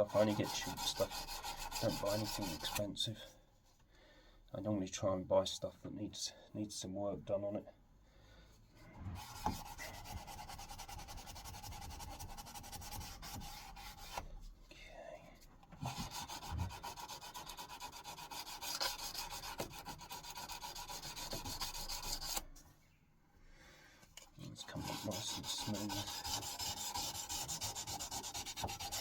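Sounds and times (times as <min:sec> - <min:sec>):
sandpaper rubbing on steel: 0:00.0 - 0:02.8, 0:09.2 - 0:14.2, 0:15.9 - 0:22.5, 0:24.4 - 0:29.0.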